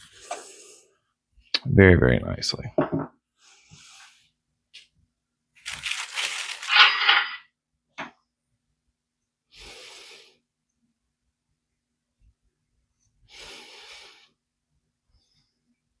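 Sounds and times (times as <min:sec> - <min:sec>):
soft rustles: 0:05.6 - 0:07.4.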